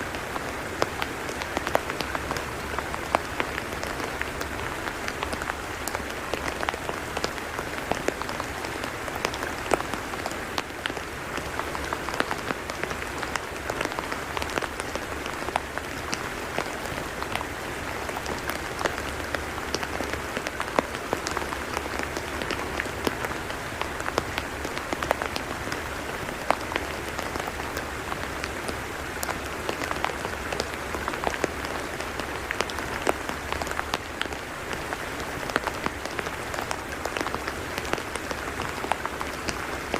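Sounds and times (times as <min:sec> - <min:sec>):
rain falling on wet mud: 0:00.0 - 0:39.9.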